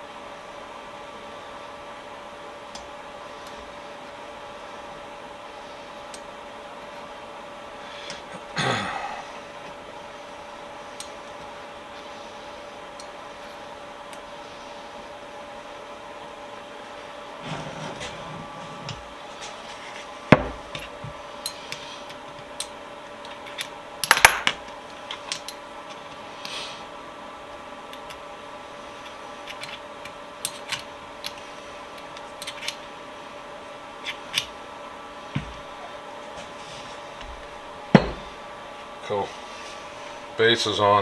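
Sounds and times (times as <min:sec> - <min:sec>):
steady hum: 0:00.0 - 0:41.0.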